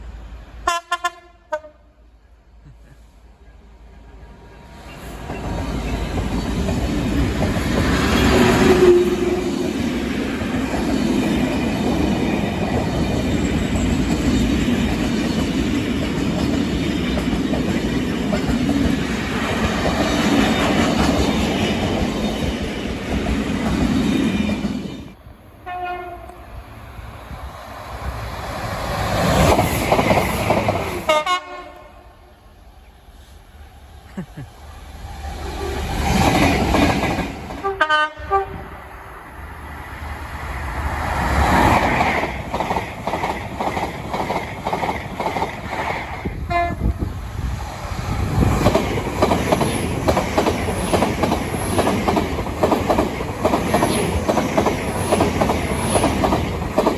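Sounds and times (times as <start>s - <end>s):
train horn blasts: 0.6s - 2.0s, 25.6s - 26.5s, 31.1s - 32.3s, 37.6s - 38.7s, 46.5s - 47.0s
train wheels rumbling on rails: 2.6s - 32.0s, 32.8s - 56.9s.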